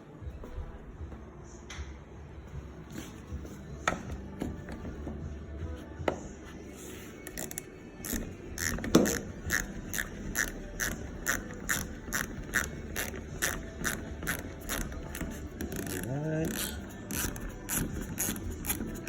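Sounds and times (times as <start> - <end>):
ratchet wrench clicking: 7.2 - 19.0.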